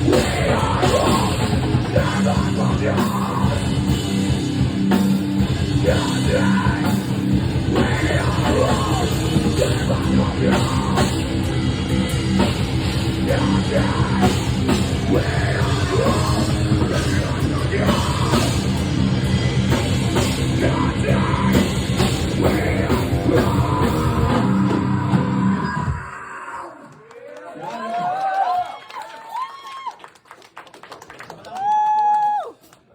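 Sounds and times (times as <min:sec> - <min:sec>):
heavy rock band playing: 0:00.0 - 0:26.1
harsh vocals: 0:00.0 - 0:28.1.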